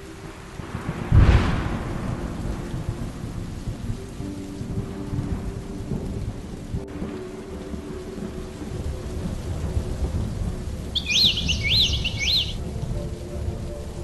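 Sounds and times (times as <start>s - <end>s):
heavy rain: 0.0s - 14.0s
thunderclap rumbling: 0.0s - 14.0s.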